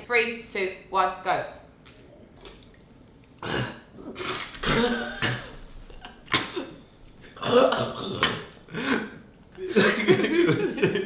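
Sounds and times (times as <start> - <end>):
people coughing and spluttering: 3.4 - 11.0.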